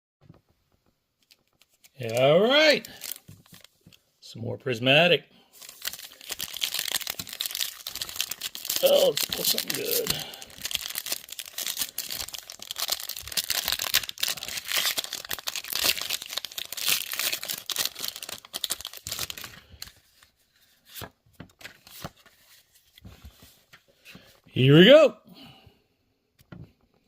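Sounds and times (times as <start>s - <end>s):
foil wrapper tearing and crinkling: 1.2s - 3.9s, 5.6s - 20.2s.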